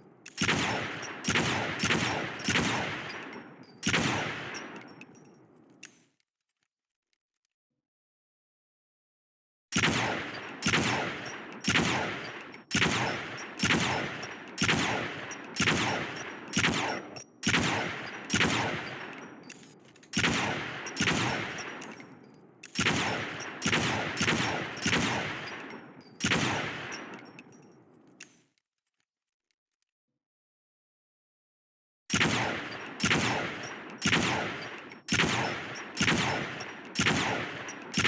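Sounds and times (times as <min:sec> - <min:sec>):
rifle single shots echoing: 0:00.3 - 0:04.9, 0:09.8 - 0:19.5, 0:20.2 - 0:22.1, 0:22.7 - 0:27.3, 0:32.1 - 0:38.0.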